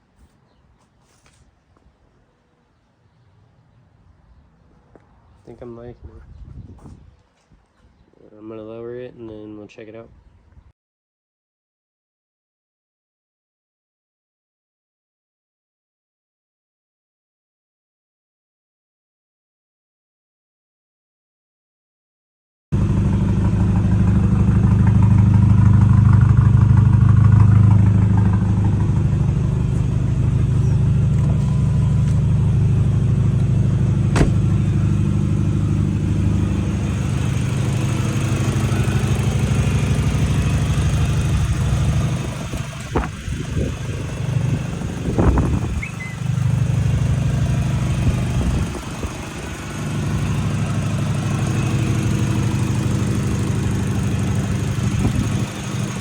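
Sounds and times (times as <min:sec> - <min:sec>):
car engine running: 0:22.8 - 0:56.0.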